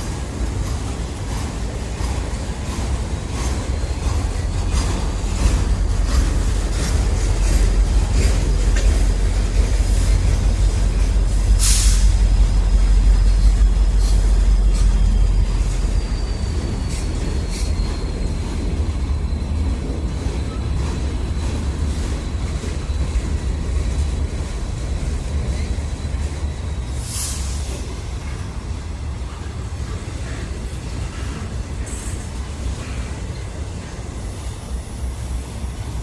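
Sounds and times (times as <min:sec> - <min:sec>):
wheels clicking over rail joints: 0:00.0 - 0:11.6
freight cars rumbling: 0:00.0 - 0:36.0
wheel squeal: 0:11.9 - 0:23.5.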